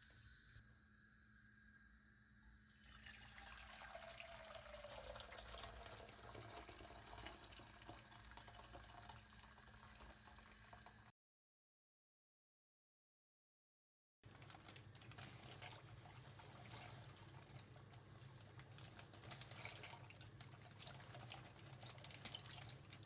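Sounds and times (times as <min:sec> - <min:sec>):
tap water running into sink: 0:02.8 - 0:11.0.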